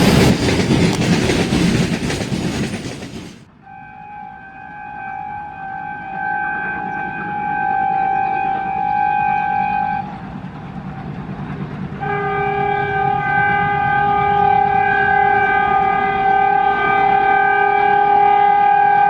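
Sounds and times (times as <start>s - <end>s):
moving train rumble: 0.0s - 19.0s
locomotive air horn: 3.6s - 10.4s, 12.0s - 19.0s.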